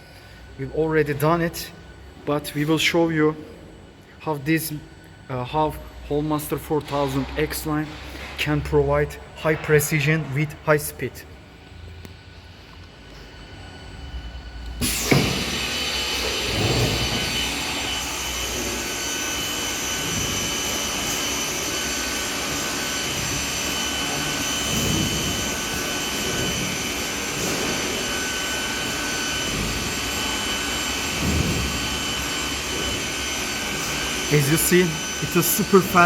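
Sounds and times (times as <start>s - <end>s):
boring machine whining: 13.1s - 36.0s.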